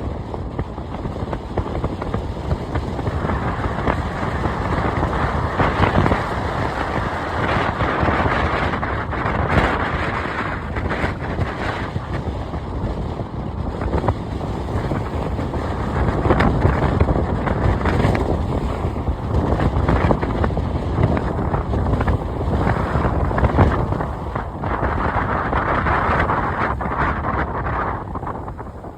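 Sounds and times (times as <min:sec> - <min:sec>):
wind buffeting microphone: 0:00.0 - 0:28.9
ocean surf breaking: 0:01.8 - 0:12.9, 0:13.9 - 0:28.9.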